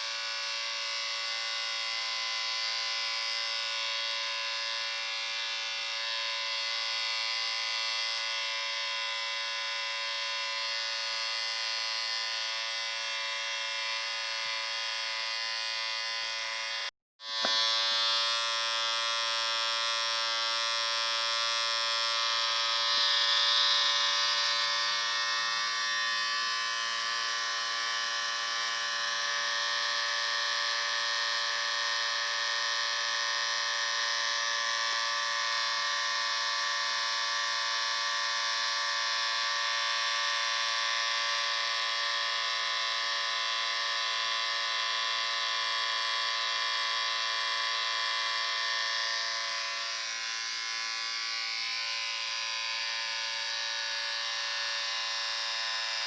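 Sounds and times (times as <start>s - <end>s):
electric shaver buzzing: 0.0s - 56.0s.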